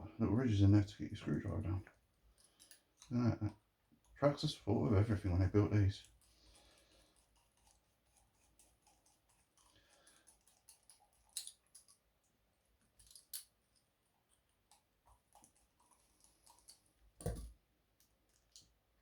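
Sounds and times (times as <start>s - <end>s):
small metal parts handled: 2.4s - 3.1s, 12.8s - 13.8s.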